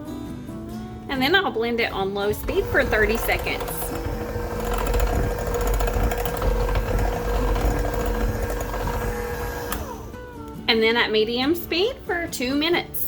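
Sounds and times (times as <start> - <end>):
electric mixer beating batter: 2.4 - 10.3.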